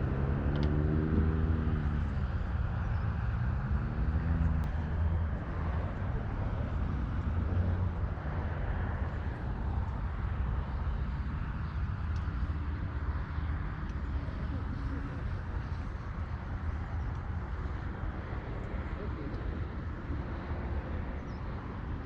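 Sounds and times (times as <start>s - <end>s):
low outdoor rumble: 0.0s - 22.0s.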